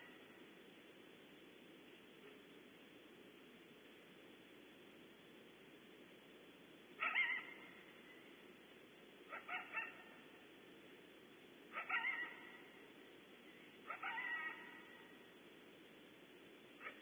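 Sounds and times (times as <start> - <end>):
coyote barking and howling: 7.0 - 8.0, 9.3 - 10.3, 11.7 - 13.0, 13.7 - 15.3, 16.8 - 17.0.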